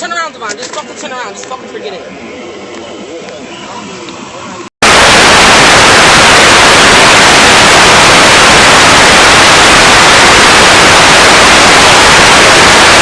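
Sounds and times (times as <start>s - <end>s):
loud static hiss: 4.8s - 13.0s.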